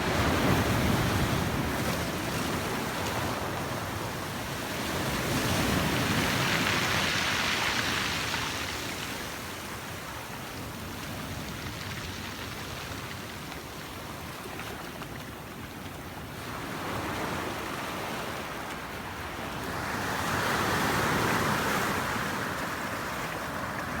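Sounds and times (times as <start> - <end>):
sea waves washing: 17.5 - 24.0.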